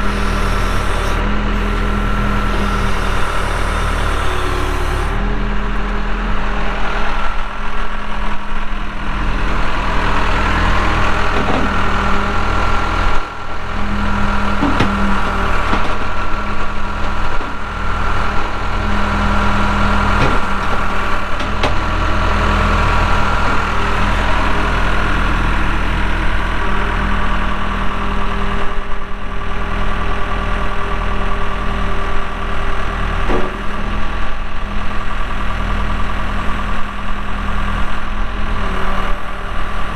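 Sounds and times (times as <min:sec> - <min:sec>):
diesel engine running: 0:00.0 - 0:39.9
sharp knocks: 0:14.5 - 0:16.2, 0:20.1 - 0:21.9.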